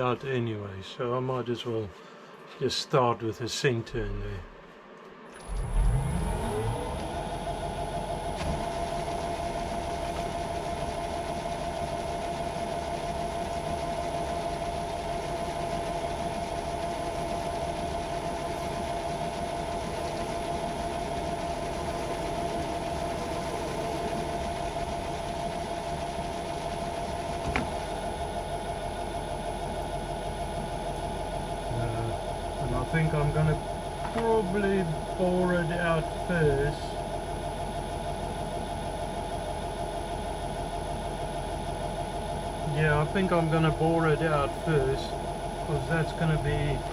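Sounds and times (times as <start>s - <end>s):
metal lathe whining: 5.3s - 31.2s, 31.9s - 37.1s.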